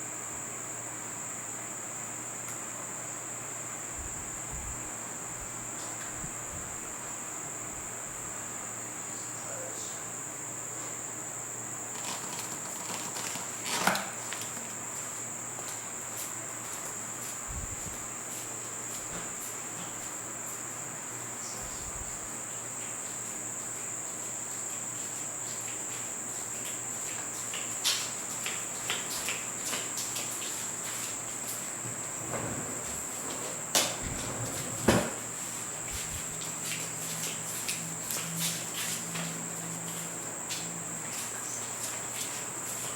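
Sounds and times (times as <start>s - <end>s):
high-pitched insect chorus: 0.0s - 42.9s
knocks: 33.8s - 35.2s.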